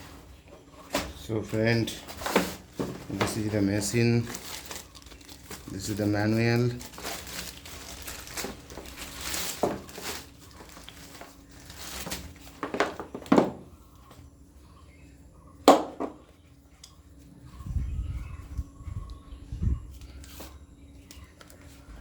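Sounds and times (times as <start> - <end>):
packaging rustling: 1.8 - 13.2.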